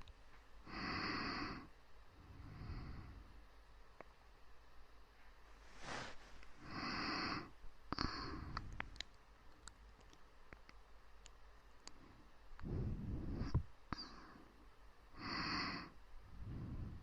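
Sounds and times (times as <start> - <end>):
soft human breathing: 0.6 - 3.5, 5.3 - 9.0, 11.8 - 17.0.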